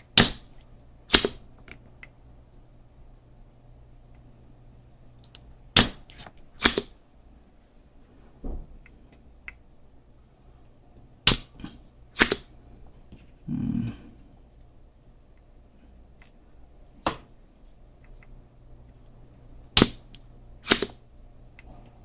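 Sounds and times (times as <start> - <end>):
desoldering pump snapping: 20.6 - 21.0.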